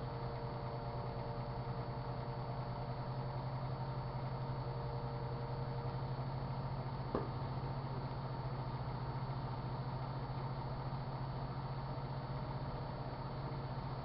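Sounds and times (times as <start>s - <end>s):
microwave oven humming: 0.0s - 14.0s
short pop: 7.1s - 7.4s.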